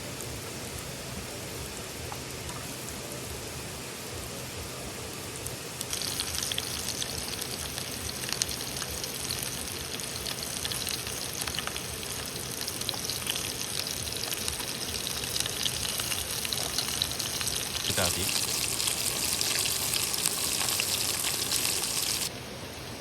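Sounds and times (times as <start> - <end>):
food sizzling in hot fat: 0.0 - 22.3
steady low hiss: 0.0 - 23.0.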